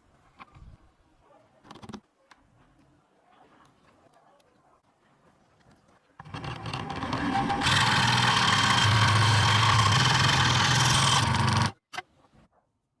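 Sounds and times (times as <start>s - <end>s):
scroll saw running: 6.2s - 11.8s.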